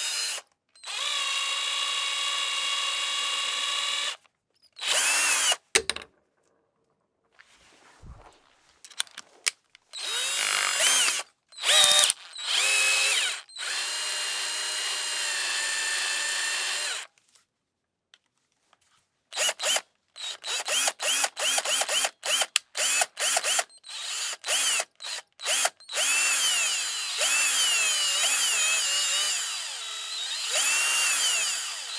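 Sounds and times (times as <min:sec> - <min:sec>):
electric drill motor whirring: 0:00.0 - 0:04.2, 0:04.8 - 0:06.0, 0:10.0 - 0:17.1, 0:19.4 - 0:31.9.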